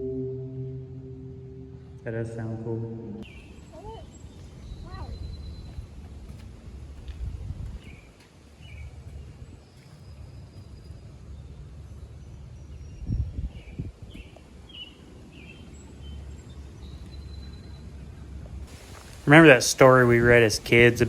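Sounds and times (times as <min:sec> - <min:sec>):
low background rumble: 0:00.0 - 0:21.0
bird chirps: 0:03.2 - 0:06.3, 0:07.8 - 0:18.4.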